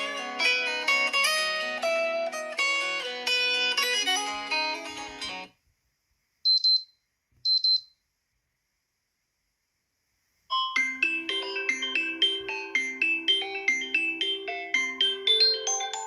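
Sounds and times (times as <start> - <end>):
plucked-string ringtone melody: 0.0 - 5.5, 10.5 - 16.0
short high beeps: 6.5 - 7.9
bright ringtone melody: 10.5 - 16.0.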